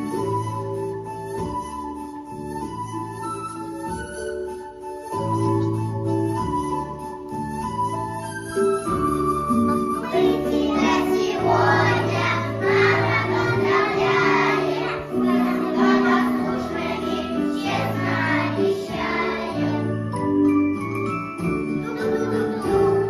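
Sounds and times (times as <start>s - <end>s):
instrumental accompaniment: 0.0s - 23.0s
children singing together: 10.0s - 20.2s, 21.8s - 23.0s.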